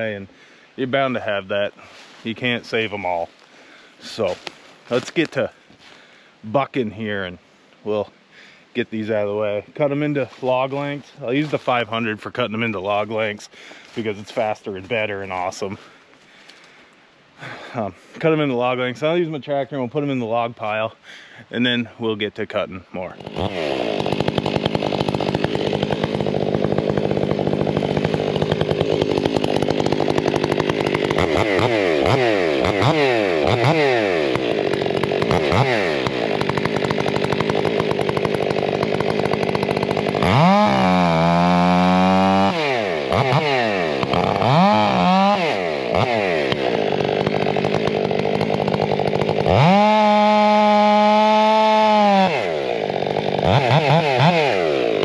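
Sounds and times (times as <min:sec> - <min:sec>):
chainsaw revving: 0:23.0 - 0:55.0.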